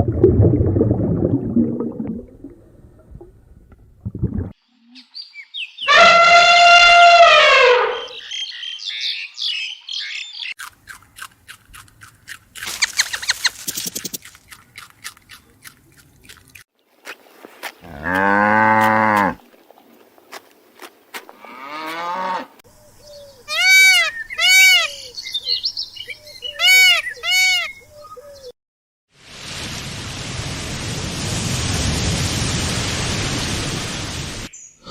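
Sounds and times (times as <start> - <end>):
animal chirps: 12.7 - 14.2
cow mooing: 17.8 - 19.4, 21.4 - 22.6.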